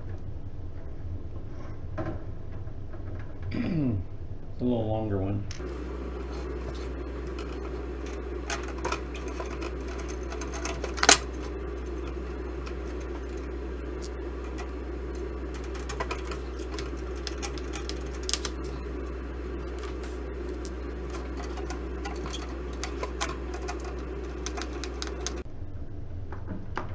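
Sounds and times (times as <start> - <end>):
steady background hum: 0.0 - 26.9
screwdriver clicks and metal taps: 5.6 - 25.4.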